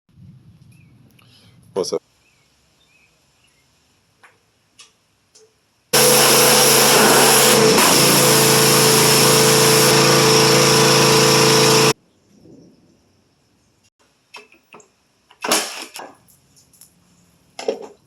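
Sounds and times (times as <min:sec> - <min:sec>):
small motor running: 0:06.0 - 0:12.0.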